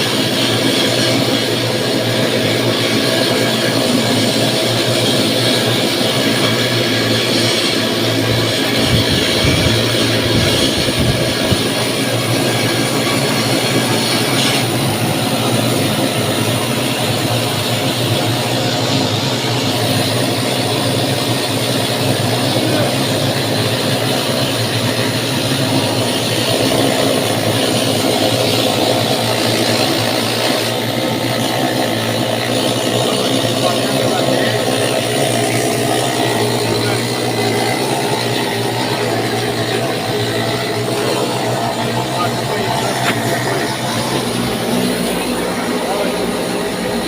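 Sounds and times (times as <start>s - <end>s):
machinery drone: 0.0s - 47.0s
low hum: 3.1s - 47.0s.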